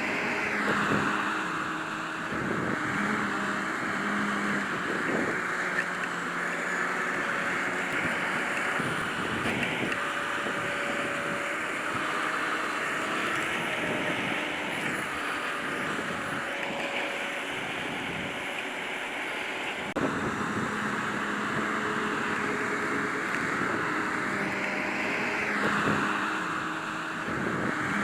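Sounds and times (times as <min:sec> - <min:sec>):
harvester engine and machinery: 0:00.0 - 0:28.0.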